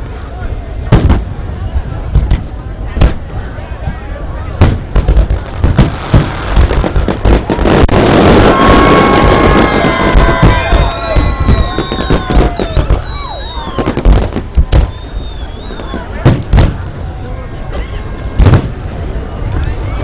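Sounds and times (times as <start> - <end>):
firework shells booming: 0.9 - 1.4, 4.6 - 16.9, 18.4 - 18.9
firework crackle: 4.4 - 19.5
firework whistling: 4.8 - 16.9.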